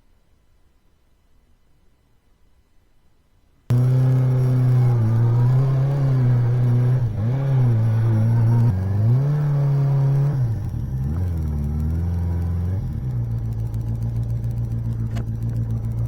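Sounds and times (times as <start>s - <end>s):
motorcycle engine shifting gears: 3.7s - 16.0s.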